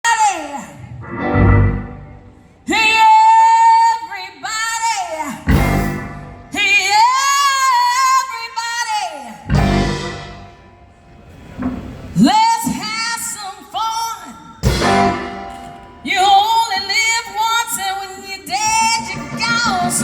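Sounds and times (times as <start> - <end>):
band low hit: 1.0 - 2.4, 5.5 - 6.6, 9.5 - 10.8, 14.6 - 16.2
live band playing: 1.0 - 2.6, 5.4 - 7.1, 9.5 - 12.0, 14.6 - 20.0.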